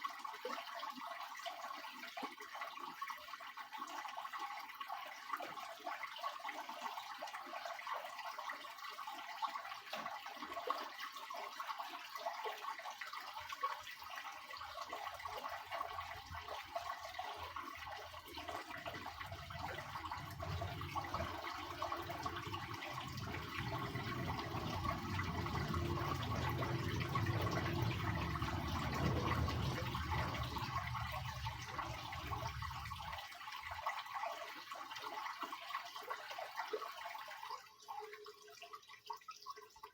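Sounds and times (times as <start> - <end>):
water splashing in washing machine: 1.6 - 37.5
low rumble: 18.8 - 33.2.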